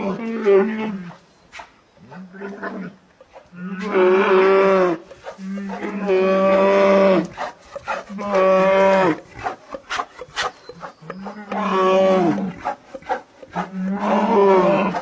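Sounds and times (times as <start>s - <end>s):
animal mooing: 2.1s - 15.0s.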